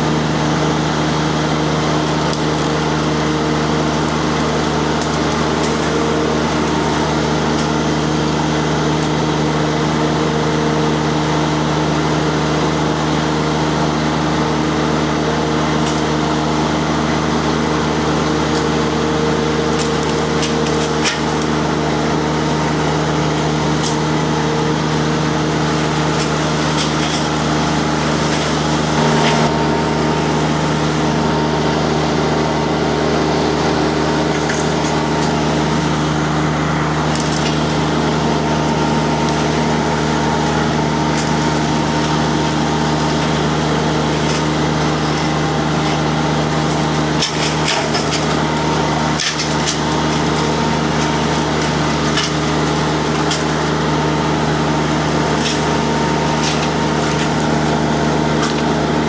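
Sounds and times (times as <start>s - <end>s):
diesel engine running: 0.0s - 59.0s
wood cracking and splintering: 1.6s - 9.7s, 14.1s - 31.6s, 32.8s - 59.0s.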